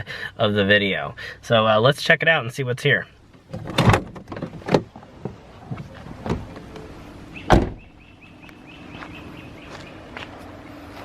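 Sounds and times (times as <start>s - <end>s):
car door opening and shutting: 3.3s - 8.0s
loud thump: 7.5s - 7.9s.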